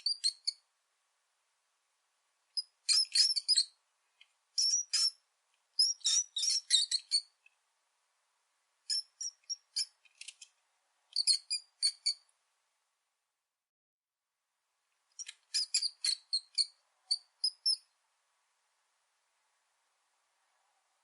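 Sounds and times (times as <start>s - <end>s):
rat squeaking: 0.0s - 0.6s, 2.6s - 3.8s, 4.6s - 5.2s, 5.8s - 7.4s, 8.9s - 10.4s, 11.1s - 12.3s, 15.2s - 17.9s.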